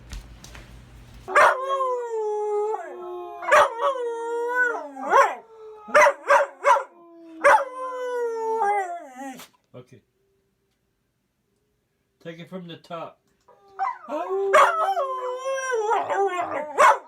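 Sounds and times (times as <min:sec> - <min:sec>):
dog yelping: 0:01.3 - 0:01.9, 0:03.4 - 0:04.0, 0:04.6 - 0:07.8, 0:13.6 - 0:17.0
dog howling: 0:01.3 - 0:09.5, 0:13.5 - 0:17.0.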